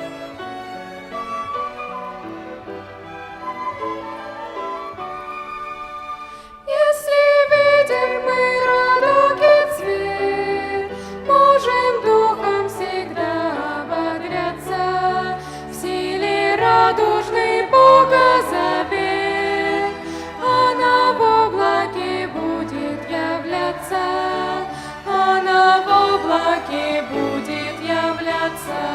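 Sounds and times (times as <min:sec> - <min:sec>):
violin ensemble playing: 0:00.0 - 0:06.4, 0:07.4 - 0:28.9
voices singing a hymn: 0:06.7 - 0:28.9.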